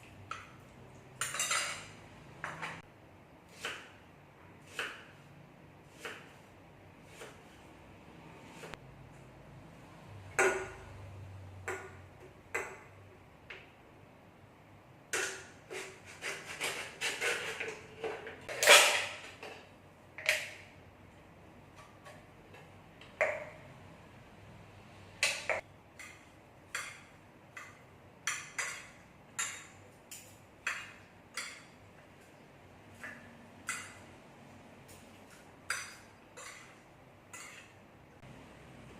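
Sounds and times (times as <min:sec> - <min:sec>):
utensils clinking against dishes: 0:01.2 - 0:02.8.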